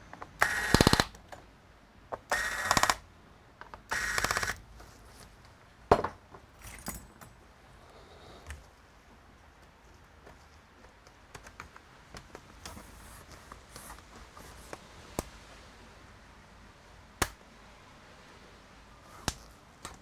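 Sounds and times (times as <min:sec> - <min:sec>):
small clicks and taps of handling: 0:09.6 - 0:15.4.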